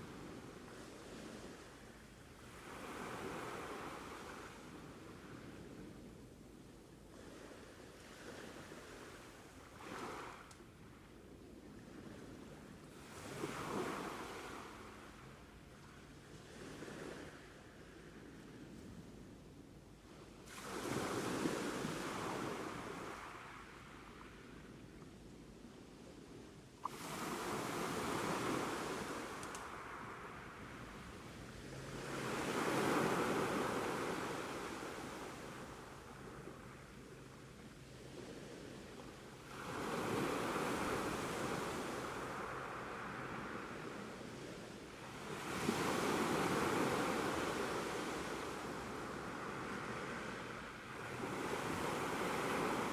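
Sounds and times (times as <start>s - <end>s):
sea waves washing in: 0.0s - 11.0s, 11.6s - 19.2s, 20.0s - 25.0s, 26.1s - 52.9s.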